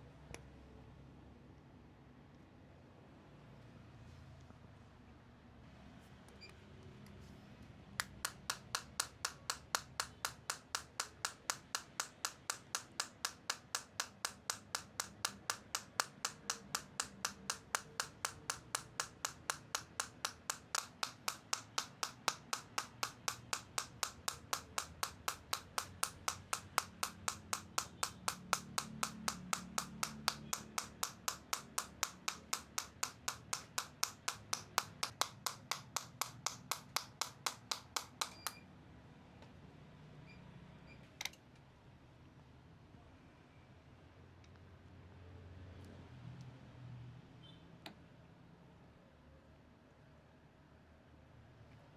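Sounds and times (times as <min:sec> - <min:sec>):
slapping massage strikes: 0:08.0 - 0:38.6.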